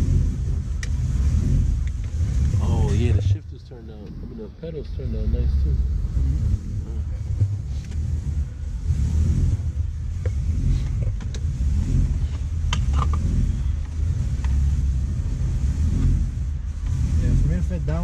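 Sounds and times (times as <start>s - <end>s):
car engine rumbling: 0.0s - 18.0s.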